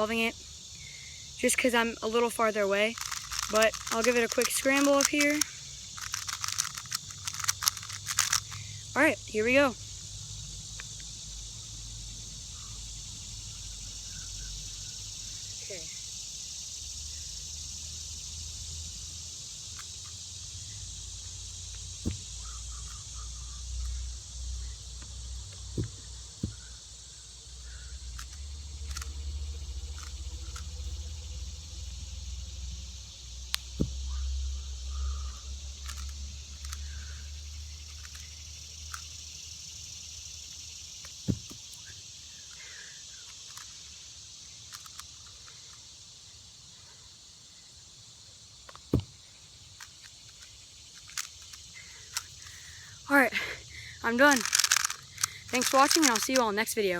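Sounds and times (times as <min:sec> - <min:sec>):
insects droning: 0:00.0 - 0:56.9
short thuds and clicks: 0:22.0 - 0:23.0, 0:25.0 - 0:26.8, 0:33.5 - 0:34.2, 0:41.1 - 0:41.8, 0:48.7 - 0:49.2.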